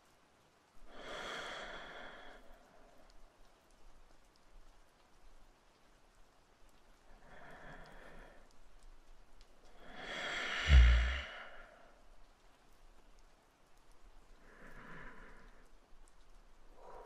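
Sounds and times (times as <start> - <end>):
man breathing slowly: 0.9 - 3.3, 7.0 - 8.7, 9.7 - 12.1, 14.4 - 15.8, 16.7 - 17.0
heavy sigh: 10.0 - 12.0.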